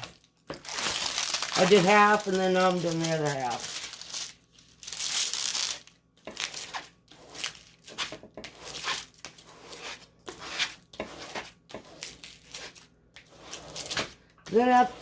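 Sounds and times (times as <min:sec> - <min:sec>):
plastic packaging crinkling: 0:00.0 - 0:06.6.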